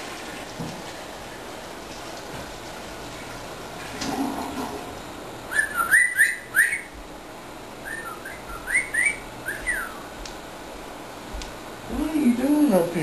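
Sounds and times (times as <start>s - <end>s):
parrot whistling: 5.5s - 7.0s, 7.8s - 10.1s.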